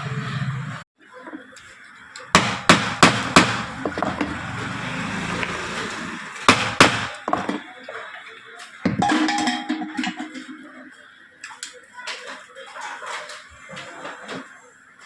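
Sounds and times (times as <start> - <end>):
sharp knocks: 6.5 - 7.6.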